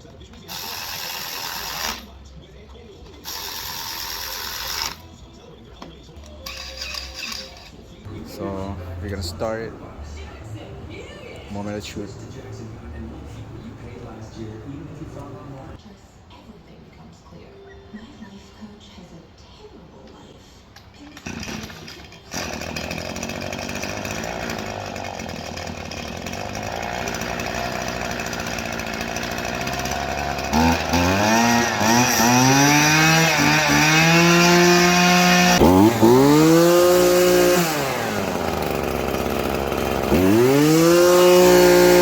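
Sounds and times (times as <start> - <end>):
string trimmer engine revving: 6.4 - 10.4, 11.5 - 15.8, 21.2 - 42.0.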